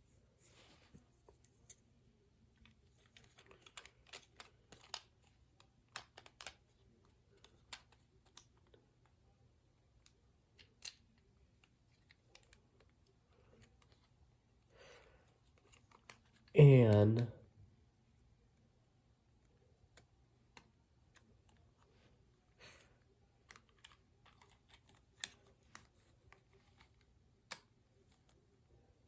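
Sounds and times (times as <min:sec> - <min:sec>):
plastic toy parts clicking: 0:02.6 - 0:06.7, 0:07.3 - 0:08.7, 0:10.0 - 0:13.0, 0:15.4 - 0:16.5, 0:23.4 - 0:28.3.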